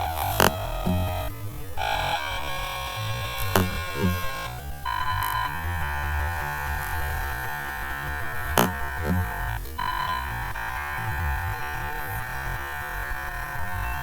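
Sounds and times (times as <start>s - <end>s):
slowed bounce effect drone: 0.0s - 12.8s
sharp click: 0.1s - 1.3s, 3.4s - 4.5s, 8.5s - 9.4s.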